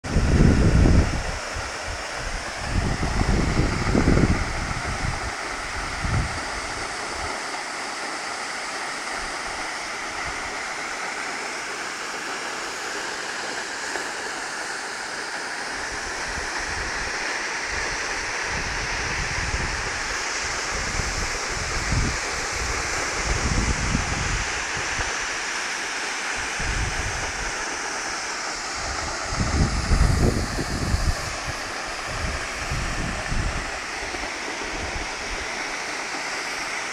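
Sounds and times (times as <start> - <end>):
wind buffeting microphone: 0.0 - 7.3, 15.8 - 25.4, 26.4 - 27.9, 28.6 - 35.6
waterfall rushing: 0.0 - 36.9.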